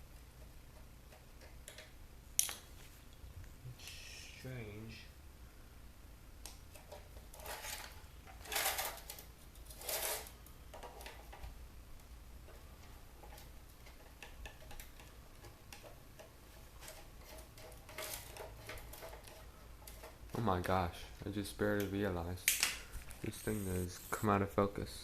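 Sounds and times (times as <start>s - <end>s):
screwdriver clicking and scraping: 23.0s - 24.3s.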